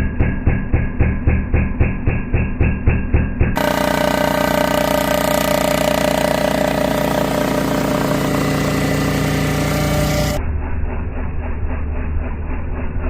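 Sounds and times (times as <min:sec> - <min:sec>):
cylinder head surfacer whining: 0:03.6 - 0:10.4.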